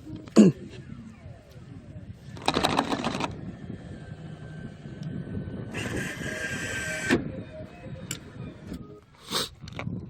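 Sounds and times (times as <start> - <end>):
wind rumble on microphone: 0.0 - 10.0
claw machine motor whirring: 2.2 - 7.4.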